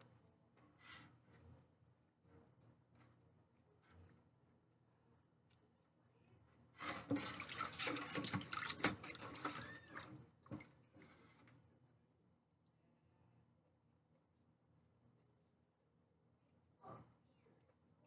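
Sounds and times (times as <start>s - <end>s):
water splashing in a sink: 6.8s - 11.0s.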